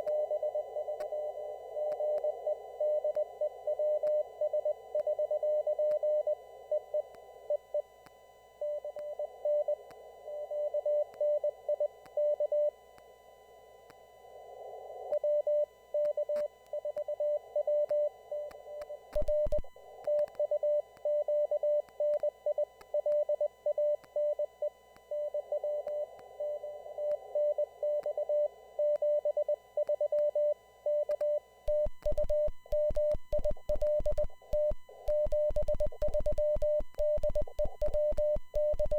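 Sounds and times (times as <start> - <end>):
morse code tone: 31.7 - 38.9.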